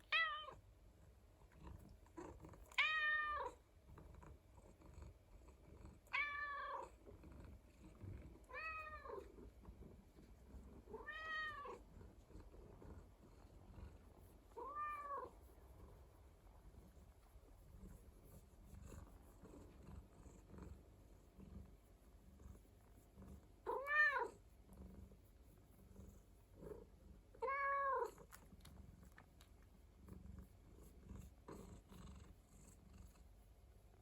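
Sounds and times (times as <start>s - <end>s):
cat meowing: 0.0s - 0.6s, 2.8s - 3.6s, 11.0s - 11.8s, 27.4s - 28.1s
cat purring: 0.0s - 34.0s.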